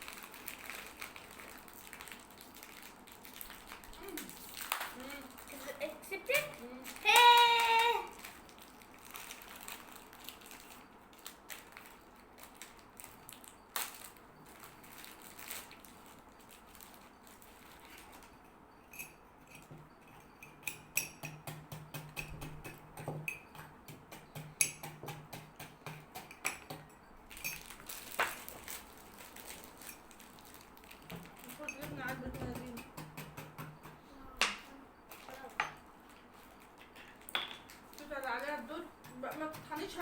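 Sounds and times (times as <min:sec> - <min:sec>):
biscuits being crunched: 0:00.0 - 0:05.8, 0:06.4 - 0:17.5, 0:27.7 - 0:31.6
spoon clinking on dishes: 0:18.8 - 0:27.8, 0:36.8 - 0:37.8.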